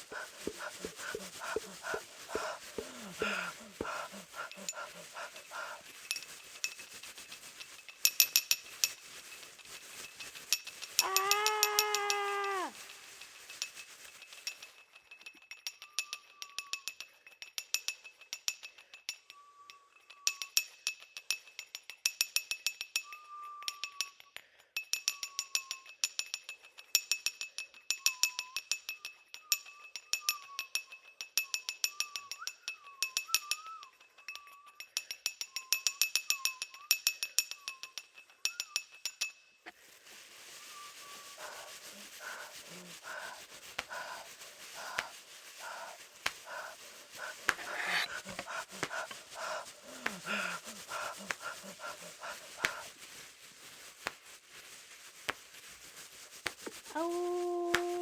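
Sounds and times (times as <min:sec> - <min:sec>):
breathy panting: 0:00.0 - 0:06.2, 0:41.0 - 0:53.1
faint whistled tune: 0:15.5 - 0:17.1, 0:19.1 - 0:20.9, 0:22.6 - 0:26.1, 0:27.8 - 0:39.6, 0:40.3 - 0:42.5.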